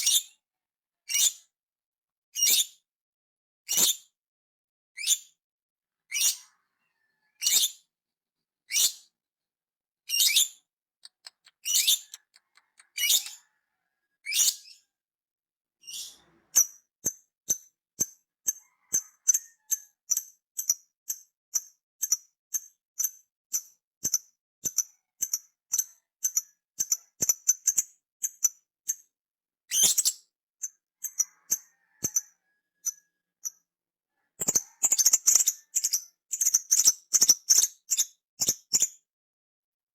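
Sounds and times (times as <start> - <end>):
parrot chirping: 10.1 - 13.6.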